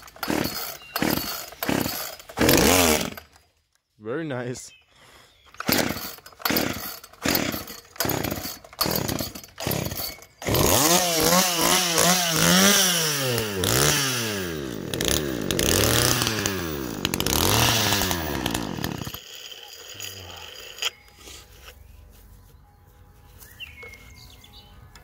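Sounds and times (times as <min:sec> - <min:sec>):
chainsaw pull-starting and revving: 0:00.0 - 0:03.4, 0:05.5 - 0:21.1.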